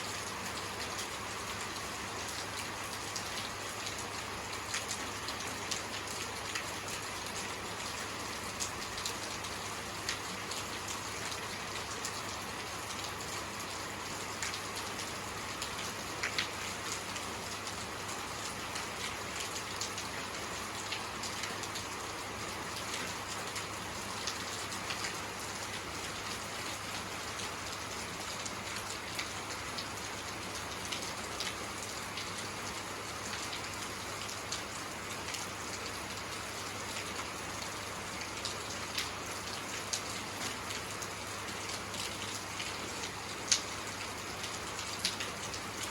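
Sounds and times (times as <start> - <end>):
raindrops ticking on a surface: 0.0 - 45.9
steady rainfall hiss: 0.0 - 45.9.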